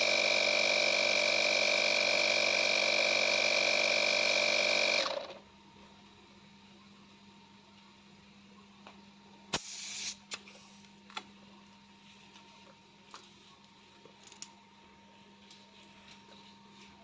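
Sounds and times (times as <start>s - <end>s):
short hiss: 9.5s - 10.2s
faint handling noises: 10.4s - 14.6s, 15.3s - 17.0s.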